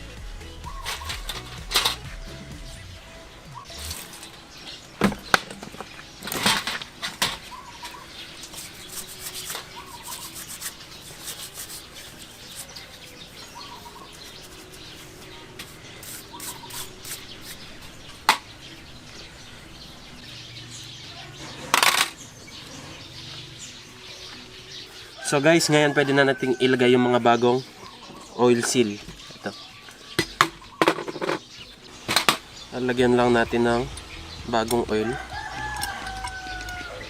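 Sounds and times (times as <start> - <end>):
rubbing metal parts: 5.6 - 18.4.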